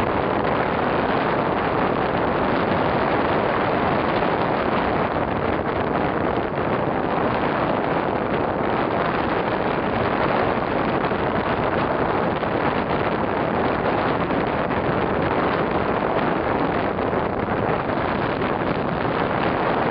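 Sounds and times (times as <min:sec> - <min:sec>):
wind buffeting microphone: 0:00.0 - 0:19.9.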